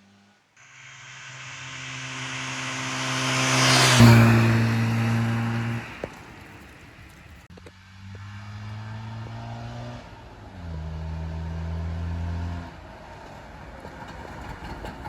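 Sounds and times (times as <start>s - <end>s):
two-stroke engine running hard: 0.8s - 7.0s.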